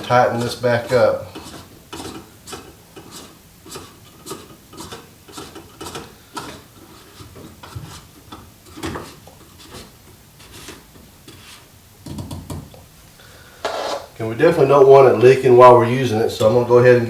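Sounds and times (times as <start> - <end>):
plastic cap clicking and scraping: 1.3 - 12.5.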